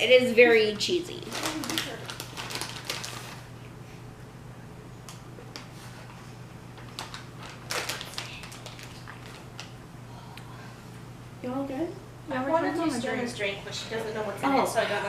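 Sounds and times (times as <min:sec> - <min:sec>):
low steady hum: 0:00.0 - 0:15.0
rustling of food and containers: 0:01.2 - 0:03.5, 0:05.6 - 0:09.8.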